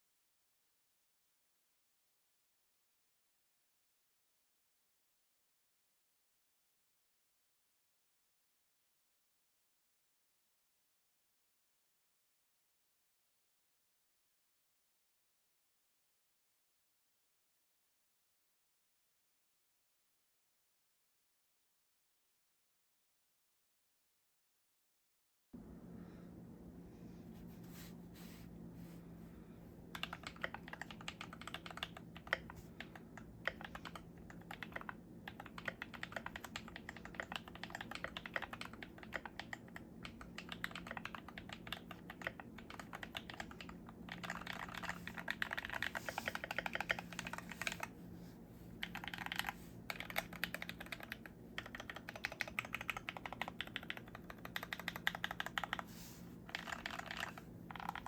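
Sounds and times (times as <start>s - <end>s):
mechanical keyboard typing: 29.9s - 47.9s, 48.8s - 55.9s, 56.5s - 58.0s.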